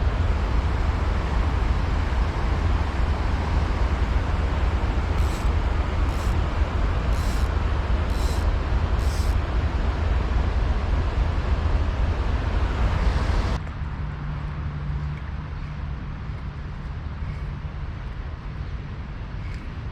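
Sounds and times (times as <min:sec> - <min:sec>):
short high chirps: 0:08.1 - 0:09.4.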